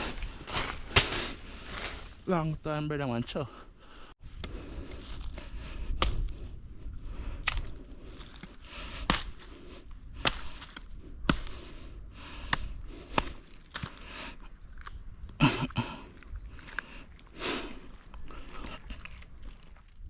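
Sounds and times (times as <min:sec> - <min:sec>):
sharp chopping strikes: 0:06.0 - 0:06.3, 0:09.0 - 0:09.5.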